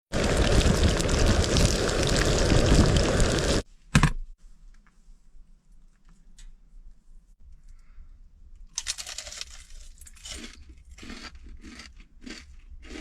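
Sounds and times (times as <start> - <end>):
strong wind buffeting microphone: 0.1 - 3.6.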